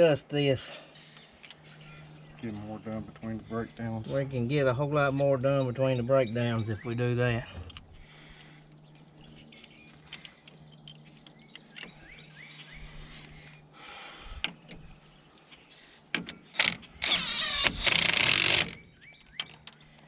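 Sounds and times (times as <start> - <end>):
low steady hum: 0.0 - 20.0
faint bird chirps: 0.8 - 4.2, 5.0 - 16.0
power tool whirring: 16.6 - 18.8.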